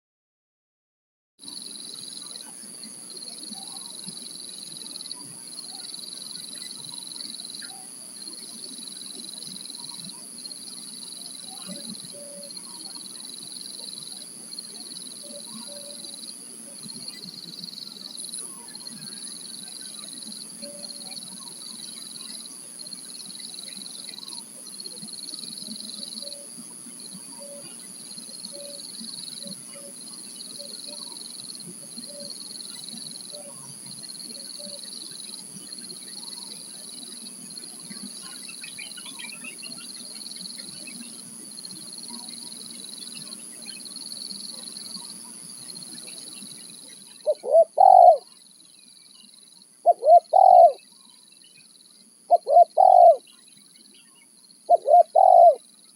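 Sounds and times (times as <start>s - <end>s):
faint repeated bird notes: 1.4s - 55.9s
steady high-pitched buzz: 1.4s - 55.9s
dove cooing: 47.2s - 48.3s, 49.8s - 50.8s, 52.3s - 53.2s, 54.7s - 55.6s.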